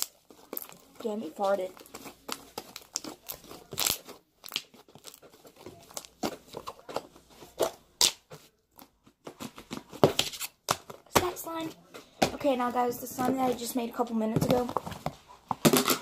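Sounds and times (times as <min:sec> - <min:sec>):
slime squished by hand: 0:00.0 - 0:08.2.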